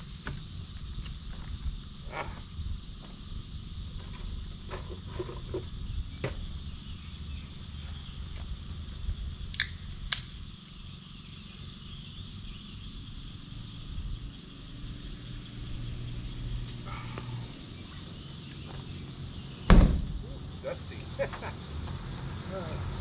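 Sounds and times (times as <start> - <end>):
steady low rumble: 0.0 - 20.7.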